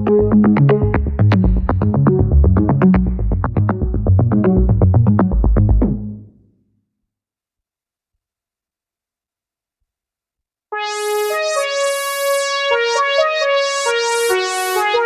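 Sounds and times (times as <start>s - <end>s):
bright synthesizer keyboard phrase: 10.8s - 15.0s.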